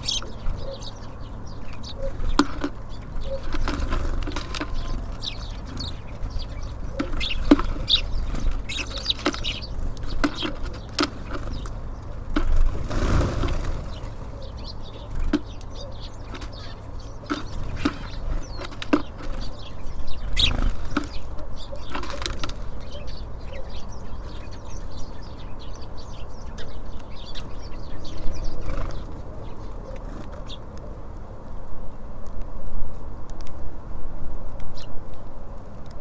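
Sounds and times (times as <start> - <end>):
bird wings fluttering: 2.0 - 14.4.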